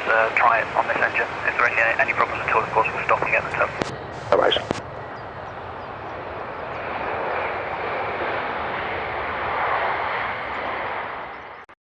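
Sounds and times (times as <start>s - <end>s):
jet engine rushing: 0.0s - 11.6s.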